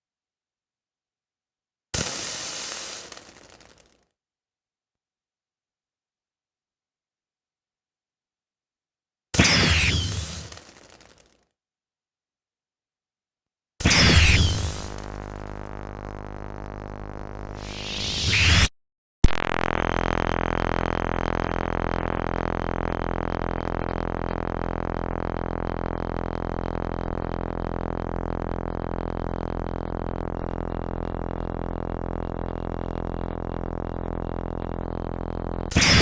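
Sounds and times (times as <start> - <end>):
lightsaber hum: 14.0 - 18.7.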